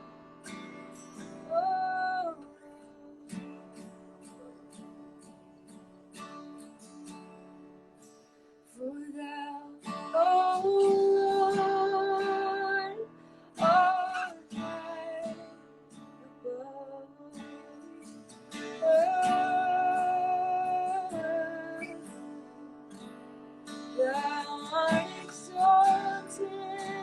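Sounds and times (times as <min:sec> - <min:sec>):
strummed acoustic guitar: 0:00.0 - 0:27.0
woman singing: 0:01.2 - 0:05.3, 0:08.7 - 0:23.1, 0:23.7 - 0:27.0.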